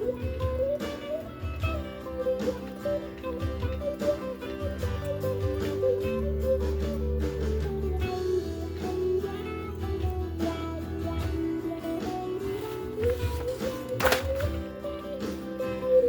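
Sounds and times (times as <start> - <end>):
blues backing track: 0.0 - 16.0
guitar lead lines: 0.0 - 16.0.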